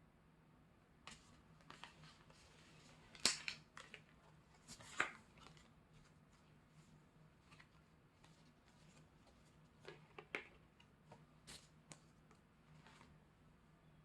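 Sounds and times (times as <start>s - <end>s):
card and plastic clicks and rustles: 1.1s - 6.1s.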